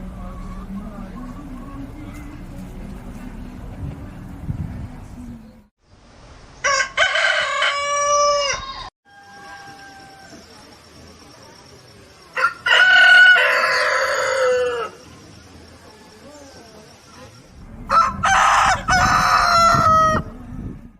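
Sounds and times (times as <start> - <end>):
rooster crowing: 6.6 - 10.6, 12.4 - 15.0, 17.8 - 20.3.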